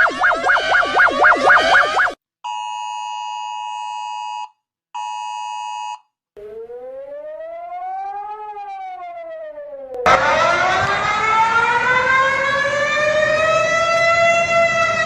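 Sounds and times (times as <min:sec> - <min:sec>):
harsh two-note alert beep: 0:00.0 - 0:02.1
siren winding up and down: 0:00.0 - 0:02.2, 0:06.4 - 0:15.0.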